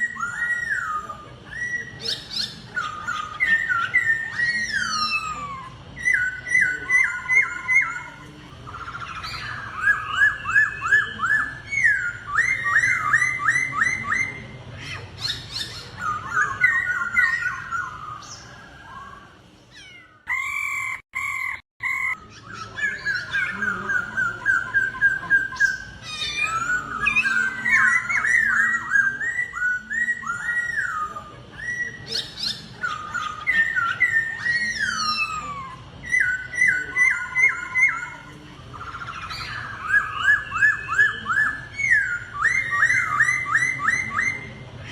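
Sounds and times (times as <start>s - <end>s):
bird singing whistled notes: 0.0s - 14.5s, 21.8s - 44.9s.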